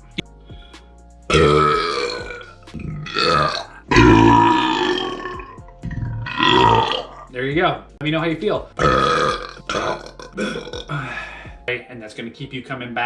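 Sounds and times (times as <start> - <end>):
person belching: 1.3 - 7.3, 8.8 - 11.2.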